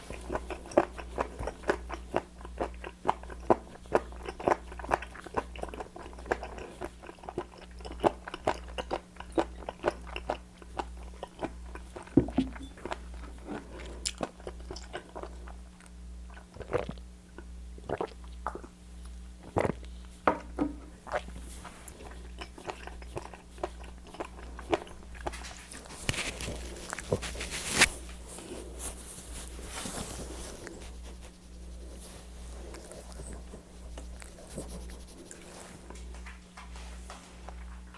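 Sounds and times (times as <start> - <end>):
chewing and crunching seafood: 0.0 - 20.1, 20.9 - 36.7
low electrical hum: 0.0 - 37.9
rustling noise: 25.3 - 37.8.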